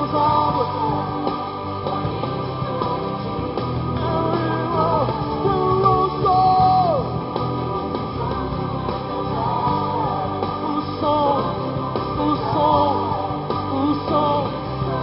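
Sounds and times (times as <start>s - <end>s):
rock band playing worship music: 0.0s - 15.0s.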